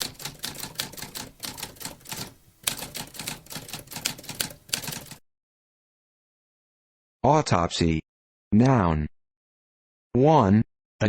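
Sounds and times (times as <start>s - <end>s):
typewriter keys clacking: 0.0s - 5.2s.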